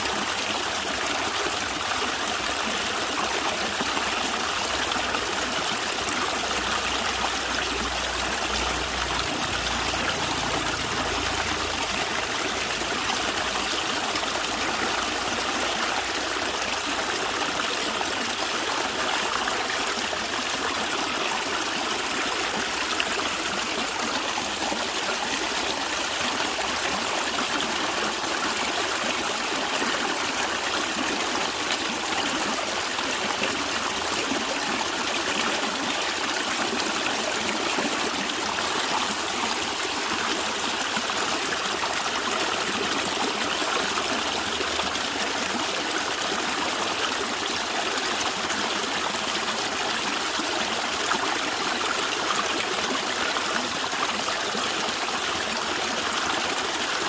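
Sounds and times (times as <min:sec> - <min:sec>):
stream gurgling over stones: 0:00.0 - 0:57.0.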